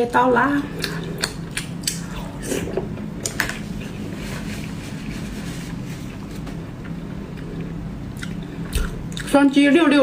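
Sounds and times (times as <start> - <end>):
wet chewing sounds: 0.6 - 3.5, 6.1 - 9.4.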